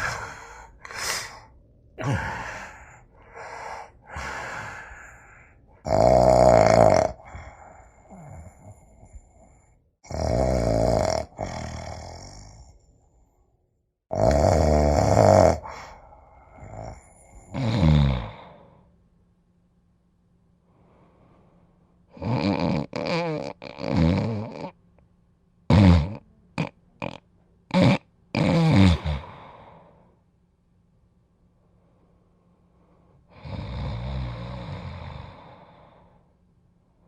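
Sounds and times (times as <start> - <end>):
person snoring: 0.0 - 9.5, 10.1 - 12.8, 14.1 - 18.8, 22.1 - 24.8, 25.7 - 29.9, 33.3 - 36.2.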